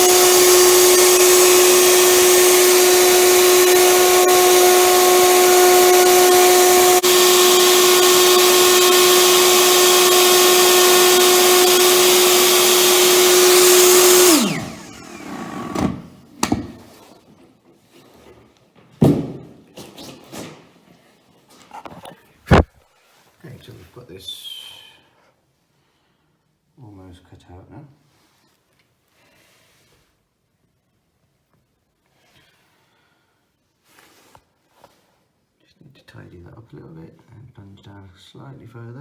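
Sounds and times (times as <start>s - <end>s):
router cutting wood: 0.0s - 16.0s.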